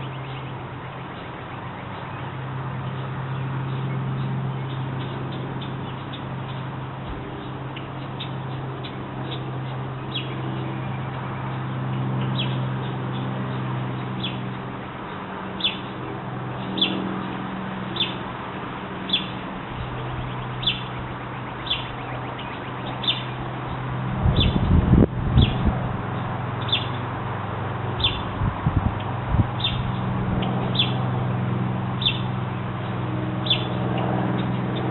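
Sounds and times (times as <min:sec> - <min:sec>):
steady low hum: 0:00.0 - 0:34.9
baby birds chirping: 0:19.1 - 0:23.4, 0:28.0 - 0:28.3, 0:29.6 - 0:30.0.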